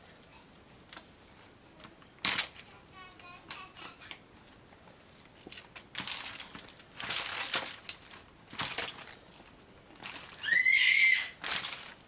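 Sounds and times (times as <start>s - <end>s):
meat tearing and crinkling: 4.9s - 12.0s.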